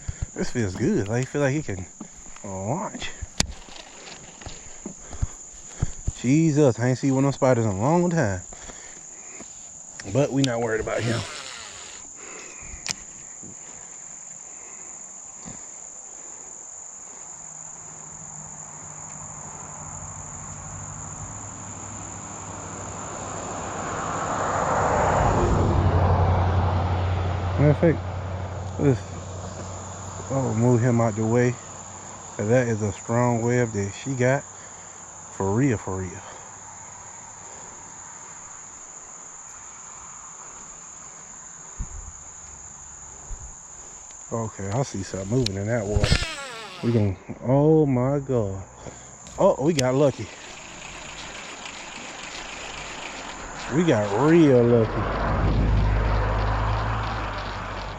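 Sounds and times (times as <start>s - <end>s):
insects trilling: 0.0s - 57.9s
motor vehicle engine hum: 49.8s - 57.9s.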